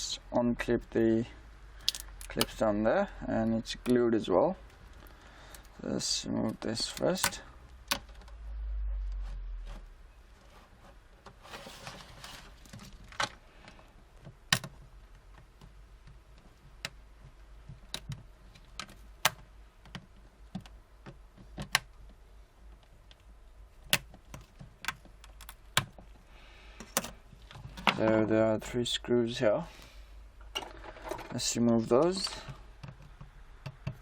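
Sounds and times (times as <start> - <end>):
plastic scraping: 9.0 - 19.0.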